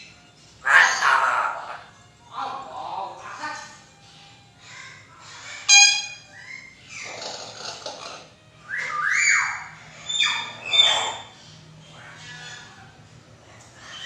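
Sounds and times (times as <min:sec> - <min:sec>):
myna whistling and calling: 0:04.7 - 0:07.7, 0:08.6 - 0:11.4.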